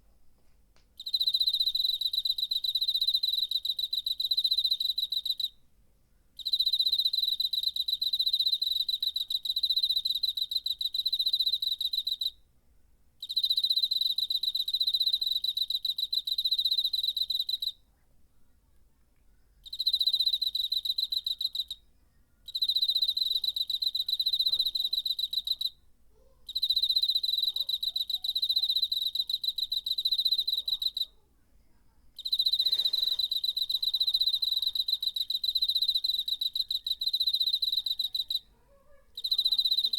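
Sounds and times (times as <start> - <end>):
cricket trilling: 19.6 - 21.8, 22.5 - 25.8, 26.5 - 31.1, 32.2 - 38.5, 39.2 - 39.9.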